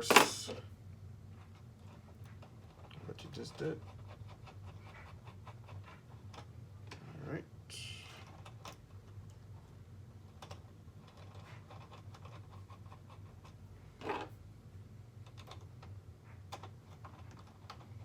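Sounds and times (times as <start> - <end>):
steady low hum: 0.0 - 18.0
small parts clicking and scratching: 1.4 - 14.3, 15.2 - 18.0.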